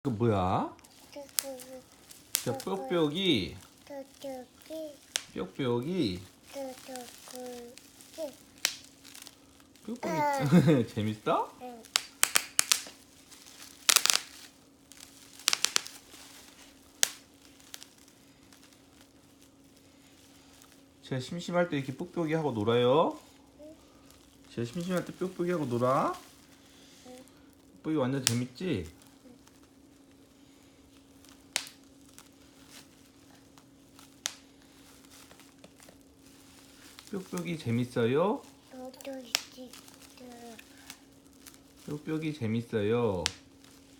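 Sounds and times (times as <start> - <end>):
bubble wrap popping: 0.1 - 43.9.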